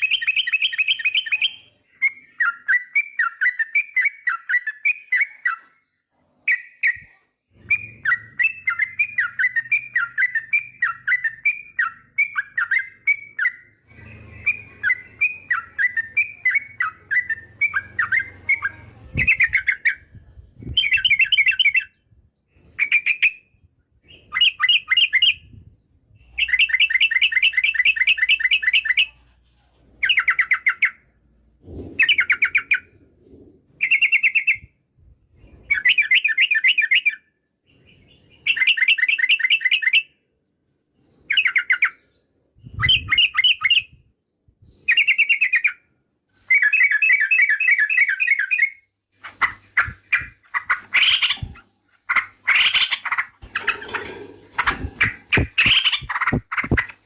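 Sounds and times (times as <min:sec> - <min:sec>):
bulbul singing: 0:00.0 - 0:29.2, 0:41.2 - 0:57.0.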